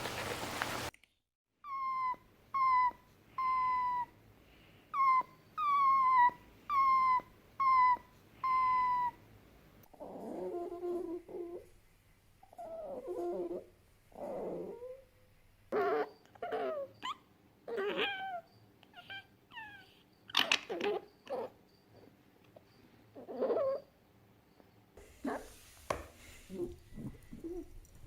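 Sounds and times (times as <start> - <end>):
fox high-pitched whining cries: 1.6 - 4.2, 4.9 - 9.2, 12.5 - 13.6, 14.2 - 15.1, 15.7 - 22.1, 23.1 - 24.0.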